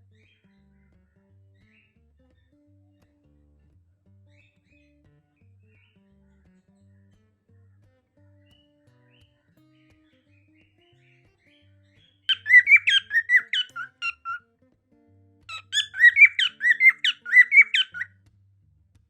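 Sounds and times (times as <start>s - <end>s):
faint guitar music: 0.0s - 19.0s
cockatiel calling: 12.3s - 14.4s, 15.5s - 18.1s.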